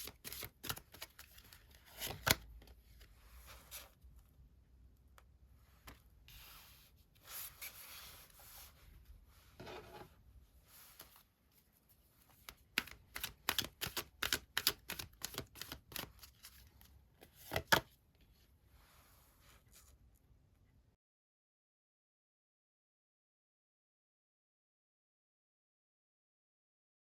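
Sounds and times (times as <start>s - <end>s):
cards shuffling: 0.0s - 3.9s, 12.3s - 17.8s
card clicks and snaps: 12.7s - 16.1s.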